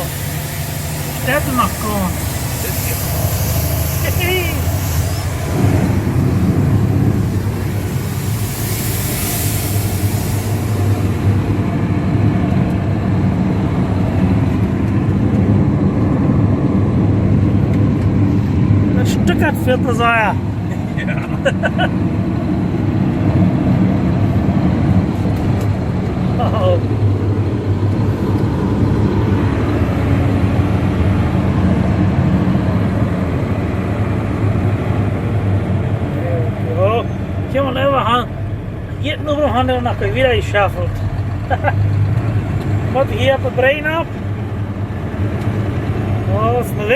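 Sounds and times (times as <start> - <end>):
air hiss: 0.0 - 13.1
diesel truck engine droning: 0.0 - 46.9
road and mechanical noise: 0.0 - 46.9.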